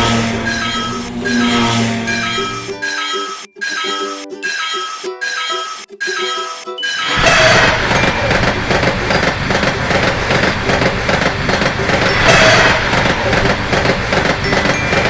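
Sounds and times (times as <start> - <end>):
train rumbling and rattling: 0.0 - 2.7, 7.2 - 15.0.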